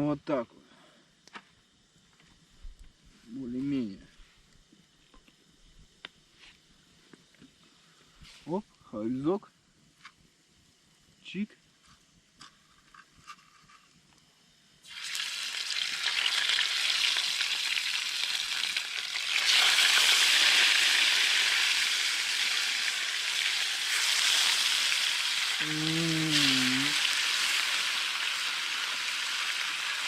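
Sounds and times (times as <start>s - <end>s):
fish frying in hot oil: 14.8s - 30.0s
person humming: 25.6s - 27.1s.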